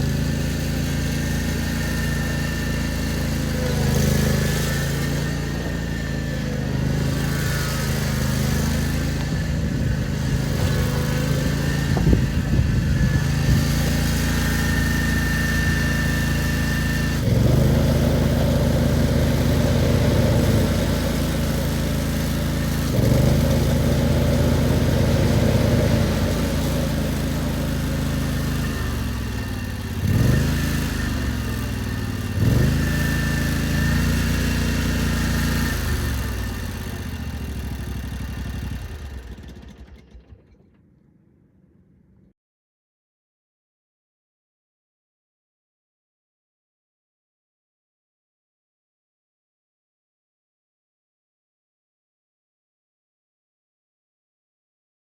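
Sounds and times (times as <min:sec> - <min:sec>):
engine revs: 0:00.0 - 0:40.9
mower engine running: 0:00.0 - 0:41.3.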